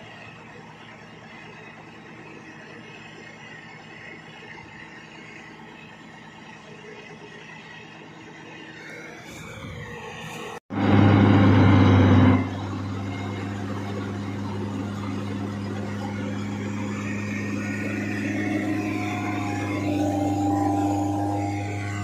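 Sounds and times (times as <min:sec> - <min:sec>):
combine harvester engine hum: 0:00.0 - 0:22.0.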